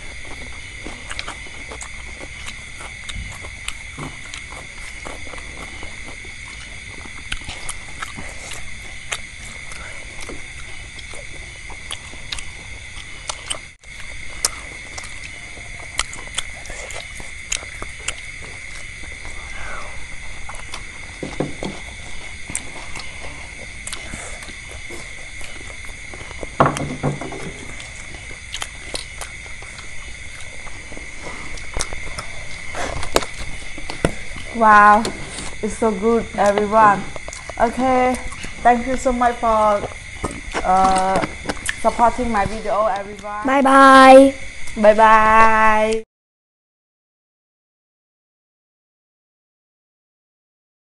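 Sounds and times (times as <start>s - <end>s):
chewing food: 0.0s - 43.3s
high-pitched hum: 0.0s - 46.1s
wet mouth noises: 0.2s - 20.9s, 21.8s - 26.6s, 27.7s - 35.6s, 36.4s - 38.6s, 39.8s - 41.9s.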